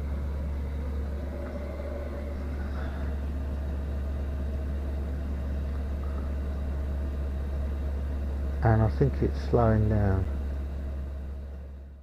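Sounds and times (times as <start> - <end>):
air heater humming: 0.0 - 12.0.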